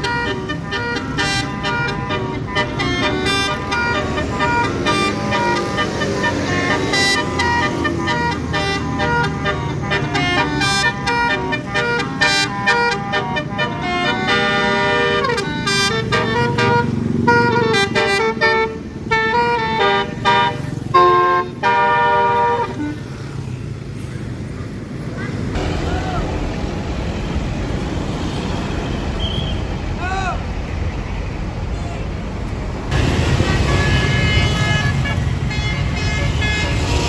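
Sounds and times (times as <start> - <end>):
bus multi-tone horn melody: 0.0 - 23.6, 31.7 - 37.0
bus engine running: 0.0 - 37.0.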